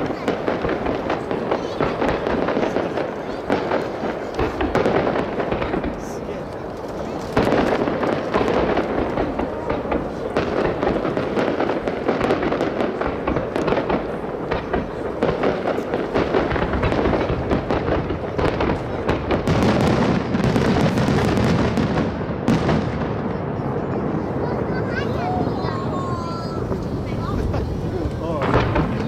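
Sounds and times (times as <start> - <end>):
fireworks bangs and crackle: 0.0 - 29.0.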